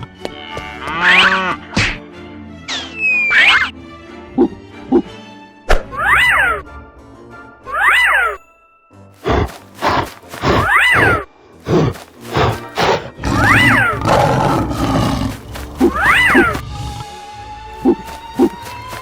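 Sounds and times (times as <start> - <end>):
cartoon background music: 0.9 - 8.7
animal roar and grunt effects: 9.2 - 17.0, 17.8 - 19.0.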